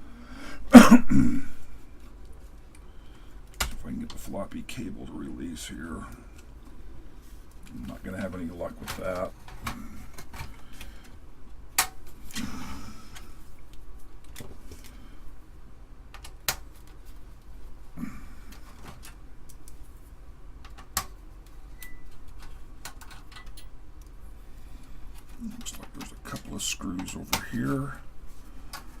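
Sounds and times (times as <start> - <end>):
tools clicking and rattling on metal: 21.8 - 23.8.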